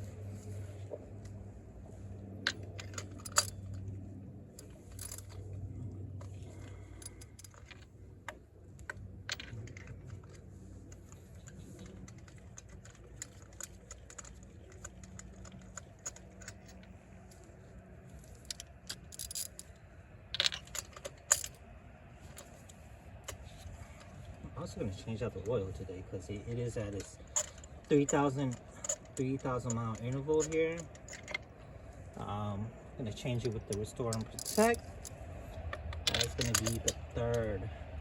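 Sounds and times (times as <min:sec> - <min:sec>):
low steady hum: 0:00.0 - 0:38.0
metallic clinks of hand tools: 0:33.6 - 0:35.1, 0:36.1 - 0:37.4.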